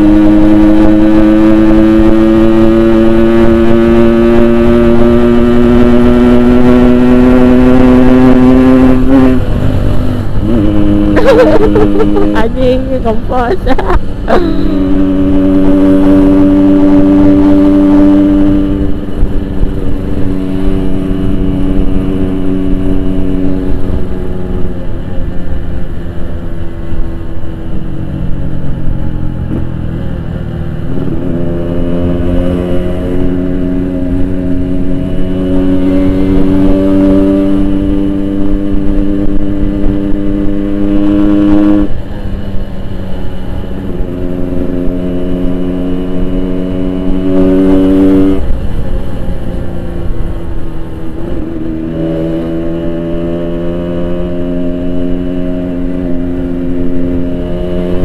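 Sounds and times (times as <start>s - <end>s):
two-stroke motorcycle engine running: 0.0s - 58.0s.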